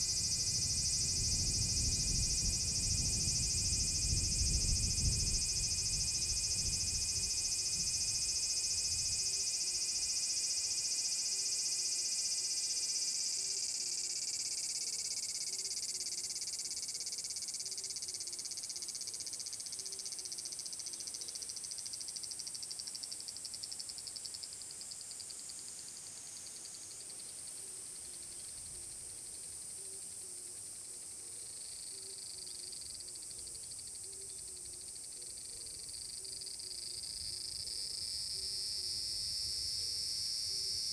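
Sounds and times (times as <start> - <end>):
cicada buzzing: 0.0 - 22.2.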